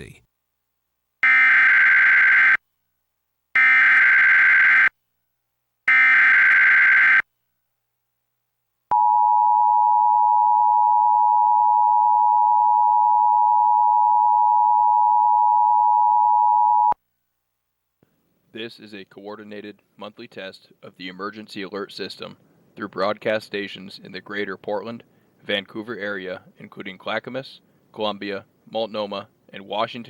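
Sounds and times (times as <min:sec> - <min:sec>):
steady attention signal tone: 0:08.9 - 0:17.0.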